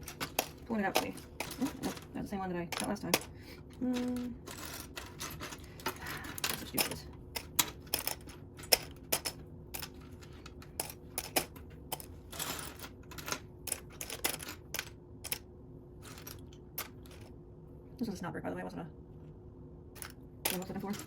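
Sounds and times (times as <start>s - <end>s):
plastic bricks clicking and clattering: 0.0s - 15.4s, 20.0s - 21.0s
plastic pieces sliding: 2.8s - 15.4s.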